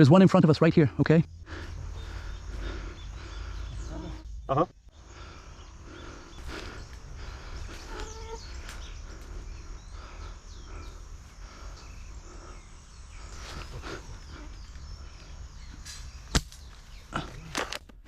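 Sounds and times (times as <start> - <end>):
steady low rumble: 0.4 - 16.2
bird chirps: 1.2 - 17.5.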